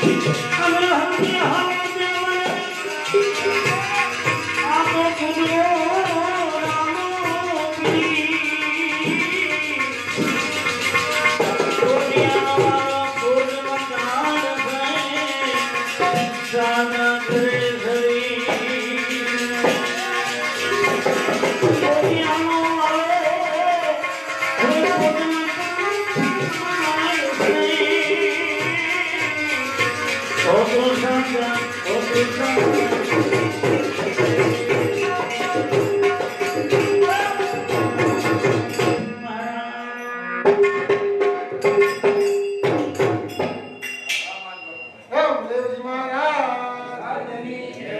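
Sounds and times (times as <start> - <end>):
hand drum percussion: 0.0 - 44.9
devotional music: 0.0 - 47.9.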